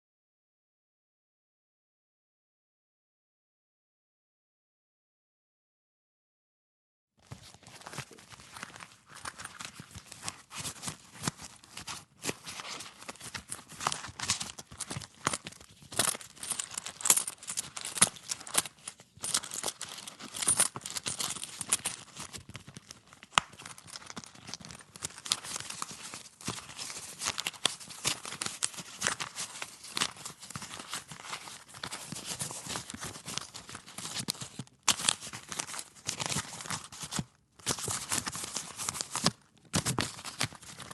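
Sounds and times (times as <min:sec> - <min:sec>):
leather creaking and rustling: 0:07.2 - 0:40.9
paper money crinkling: 0:07.4 - 0:40.9
coins and cards clicking: 0:16.0 - 0:22.1.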